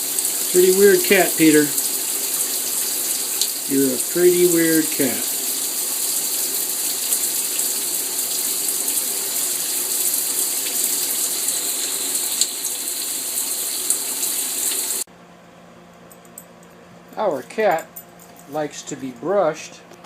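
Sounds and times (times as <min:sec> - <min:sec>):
shower spraying into bathtub: 0:00.0 - 0:15.1.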